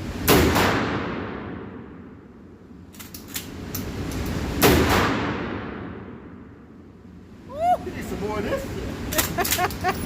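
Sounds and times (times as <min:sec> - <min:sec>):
shotgun shots echoing: 0:00.3 - 0:01.8.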